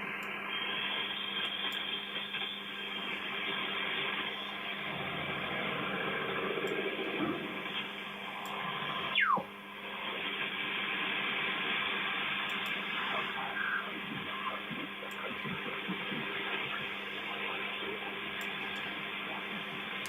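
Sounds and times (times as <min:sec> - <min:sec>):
radio band noise and hiss: 0:00.0 - 0:20.0
whistling tone sweeping down: 0:09.1 - 0:09.5.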